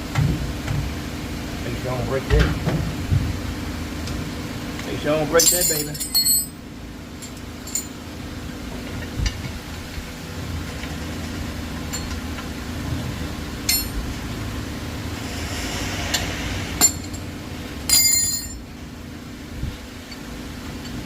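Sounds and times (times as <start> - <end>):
steady low hum: 0.0 - 21.0
metal tools clinking: 5.4 - 6.6, 7.2 - 8.0, 13.7 - 14.0, 17.9 - 18.6.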